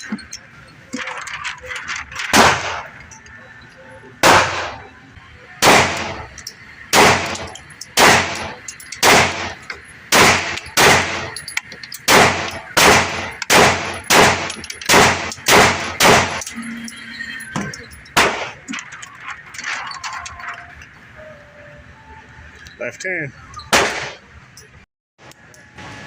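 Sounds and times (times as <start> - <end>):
gunshots with echo: 2.3 - 2.9, 4.2 - 4.9, 5.6 - 11.3, 12.1 - 16.4, 18.2 - 18.6, 23.7 - 24.2.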